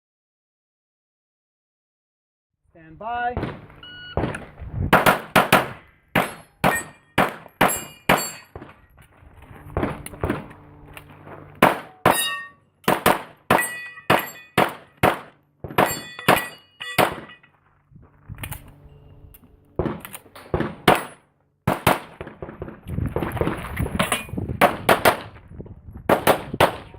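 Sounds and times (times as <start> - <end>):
rapid pistol fire: 4.9 - 8.2, 11.6 - 11.9, 12.9 - 16.4, 19.8 - 23.3, 24.6 - 25.3, 26.1 - 26.9
steel targets ringing: 6.2 - 8.6, 11.8 - 15.0, 15.8 - 17.6.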